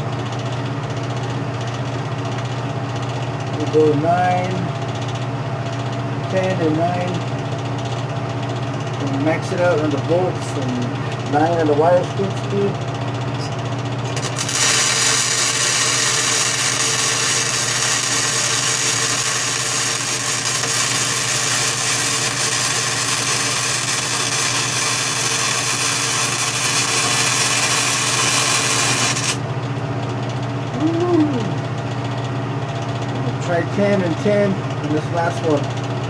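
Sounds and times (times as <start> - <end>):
welder machine low hum: 3.2 - 36.0
welding arc crackling: 14.1 - 29.4.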